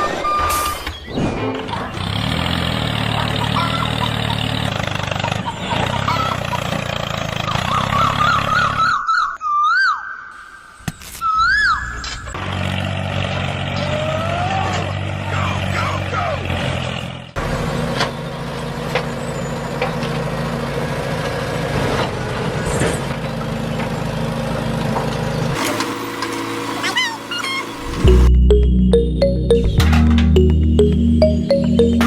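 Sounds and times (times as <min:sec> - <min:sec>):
tractor engine running: 0:01.6 - 0:08.8, 0:12.3 - 0:32.0
squeals: 0:25.5 - 0:28.3.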